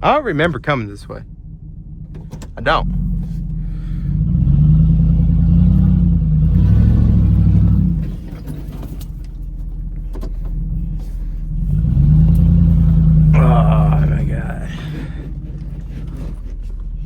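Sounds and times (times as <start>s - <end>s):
car engine under throttle: 0.0s - 17.0s.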